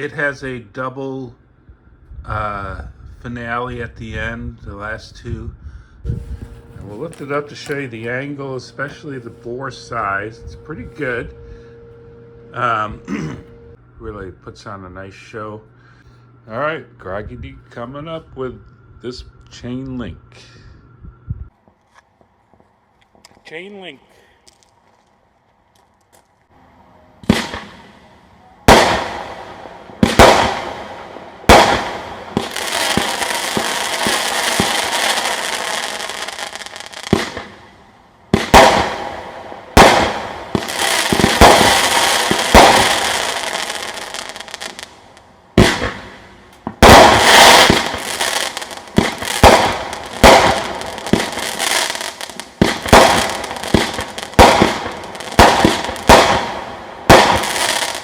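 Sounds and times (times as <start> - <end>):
dense firework bursts: 27.2 - 58.0
firework cake shots: 31.5 - 35.4, 38.4 - 39.1, 39.8 - 44.8, 45.6 - 58.0.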